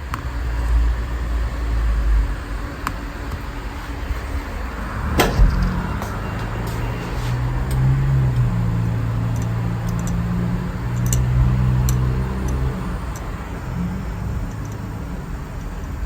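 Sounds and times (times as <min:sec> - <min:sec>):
car engine idling: 0:00.0 - 0:16.0
high-pitched engine ticking: 0:04.9 - 0:16.0.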